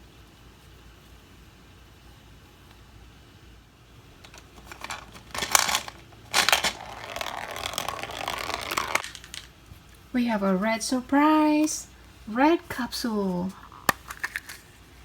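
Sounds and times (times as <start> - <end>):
toy gumball machine rattling: 4.2 - 9.6.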